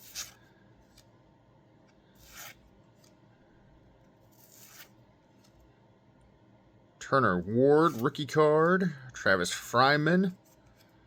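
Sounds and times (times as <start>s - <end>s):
cards rubbing together: 0.0s - 1.1s, 2.1s - 3.2s, 4.2s - 5.5s.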